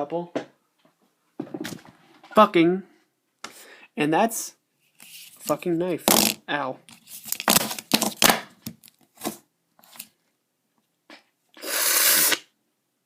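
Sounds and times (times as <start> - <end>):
handling knocks and rustles: 0.4 - 2.4.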